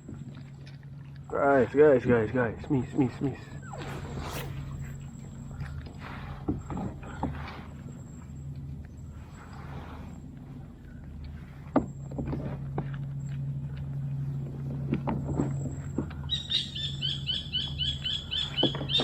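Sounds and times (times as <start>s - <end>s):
low engine hum: 0.0s - 19.0s
bird chirping: 16.3s - 19.0s.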